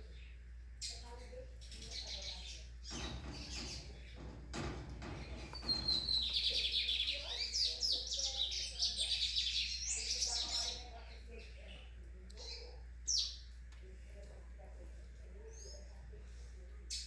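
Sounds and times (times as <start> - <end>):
bird warbling song: 0.1 - 13.5.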